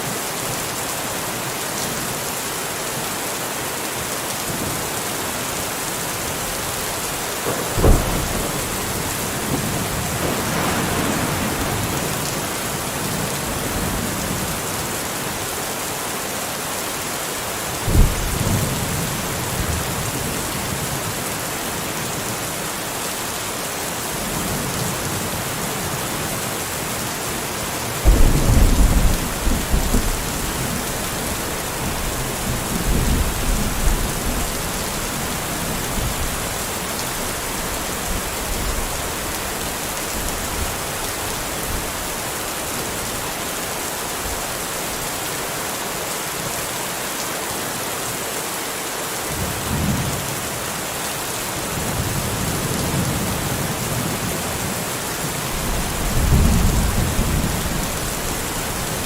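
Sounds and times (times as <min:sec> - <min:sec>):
heavy rain hissing: 0:00.0 - 0:59.0
thunder rumbling: 0:06.3 - 0:14.7, 0:17.8 - 0:20.1, 0:28.0 - 0:36.6, 0:55.5 - 0:59.0.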